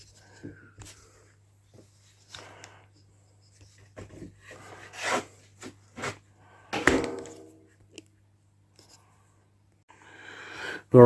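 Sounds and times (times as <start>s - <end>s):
metal anvil clunk with ring: 6.8s - 7.6s.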